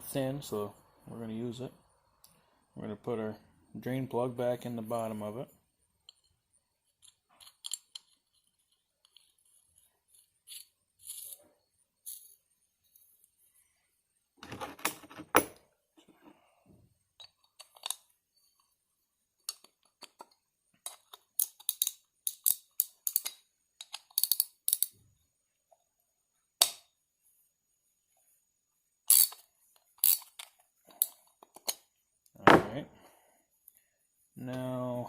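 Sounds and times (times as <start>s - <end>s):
metal parts clicking on workbench: 6.9s - 9.5s, 19.4s - 25.0s, 29.1s - 31.8s.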